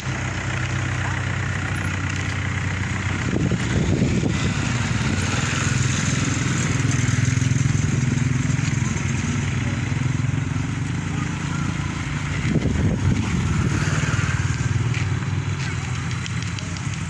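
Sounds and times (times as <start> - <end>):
small engine idling: 0.0 - 17.0.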